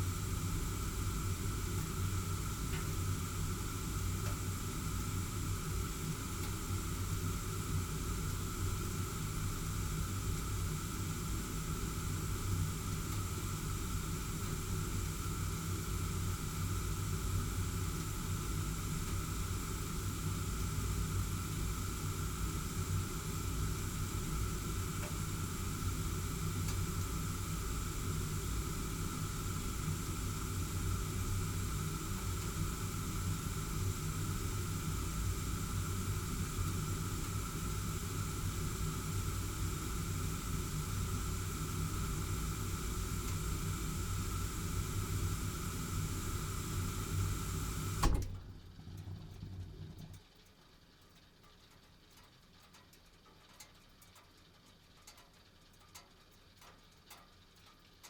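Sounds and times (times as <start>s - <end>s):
gas burner flame roaring: 0.0s - 50.2s
faint tick: 2.7s - 3.0s, 4.2s - 4.4s, 6.4s - 6.6s, 25.0s - 25.2s, 49.0s - 58.0s.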